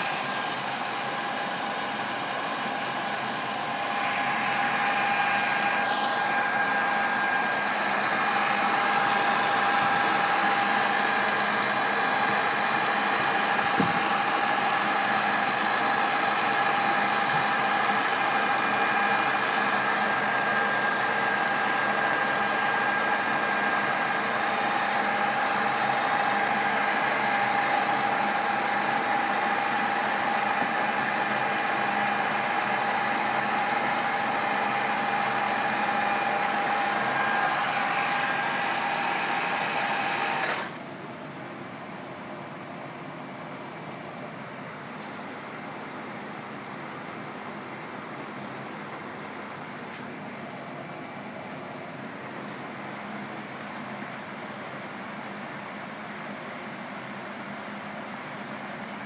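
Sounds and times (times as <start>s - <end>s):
milling machine whine: 0.0s - 41.3s.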